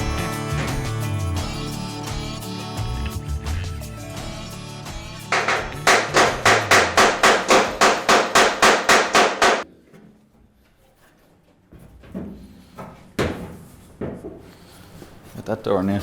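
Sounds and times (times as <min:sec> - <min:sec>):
background music: 0:00.0 - 0:08.7
rapid hammer blows: 0:04.2 - 0:09.6.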